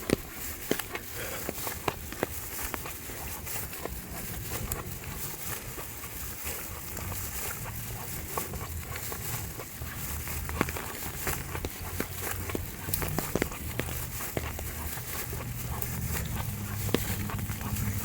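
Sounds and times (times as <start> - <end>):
light ticks and taps: 10.3 - 18.0.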